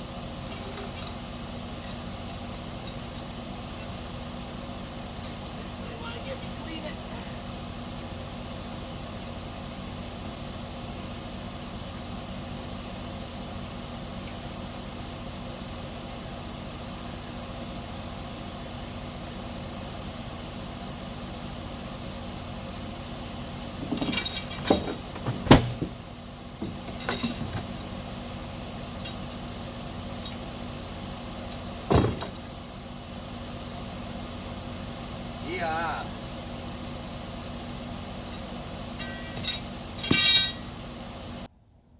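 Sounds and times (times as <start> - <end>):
engine idling: 0.0 - 41.5
metal clanks and knocks: 23.8 - 26.0, 26.6 - 27.8, 31.5 - 32.5, 38.3 - 40.7.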